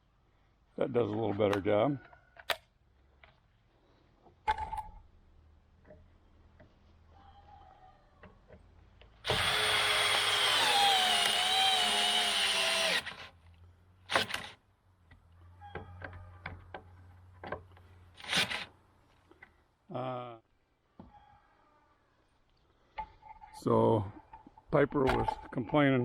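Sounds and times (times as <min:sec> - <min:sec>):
cordless drill drilling into wood: 0:09.2 - 0:13.3.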